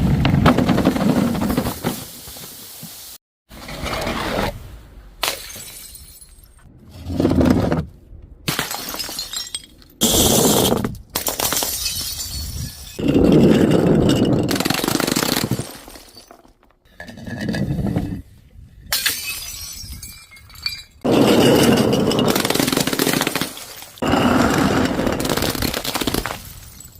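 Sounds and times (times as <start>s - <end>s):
glass bottles smashing: 5.2s - 6.5s, 8.5s - 10.6s, 11.2s - 16.6s, 18.9s - 24.1s, 25.3s - 26.9s.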